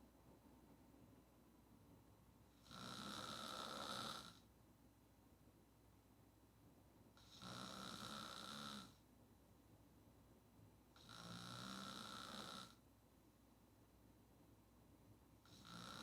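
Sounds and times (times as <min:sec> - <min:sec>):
quiet breaths: 0:00.0 - 0:16.0
woman snoring: 0:02.6 - 0:04.4, 0:07.2 - 0:09.0, 0:11.0 - 0:12.8, 0:15.5 - 0:16.0.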